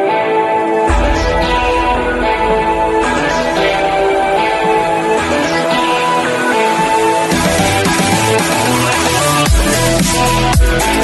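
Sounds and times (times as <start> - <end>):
deep bass: 0.9 - 11.0.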